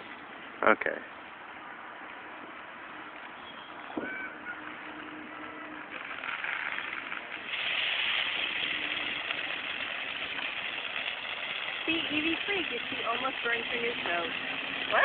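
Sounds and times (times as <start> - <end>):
ground firework hissing: 4.8 - 15.0.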